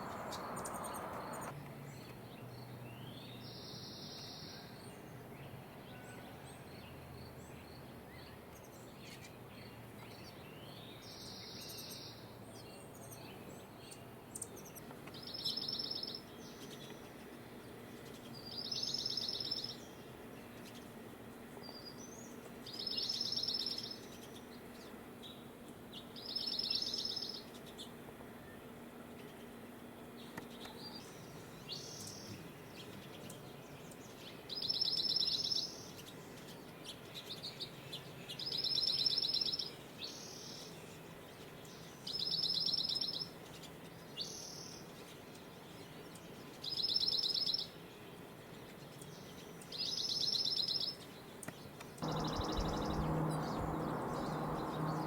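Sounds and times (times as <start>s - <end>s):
bird chirps: 0.0s - 1.5s, 52.0s - 55.0s
bird musical trill: 52.0s - 55.0s.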